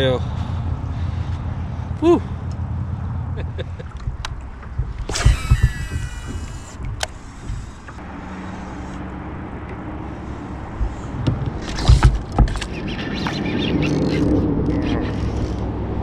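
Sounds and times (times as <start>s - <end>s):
knocks: 3.8s - 8.0s, 10.8s - 12.7s
fishing reel whirring: 5.0s - 8.0s, 11.6s - 15.7s.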